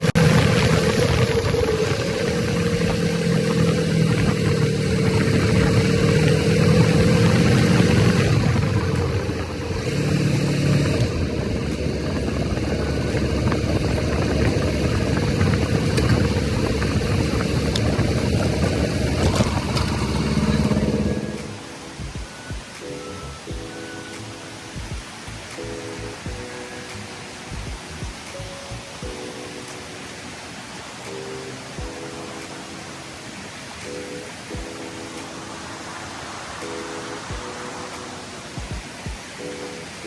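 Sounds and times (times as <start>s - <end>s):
engine running: 0.0s - 21.7s
constant rushing noise: 0.0s - 40.0s.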